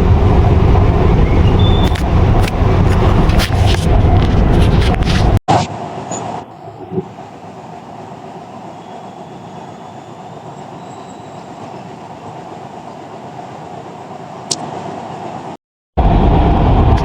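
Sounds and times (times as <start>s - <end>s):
metro train rumbling: 0.0s - 17.0s.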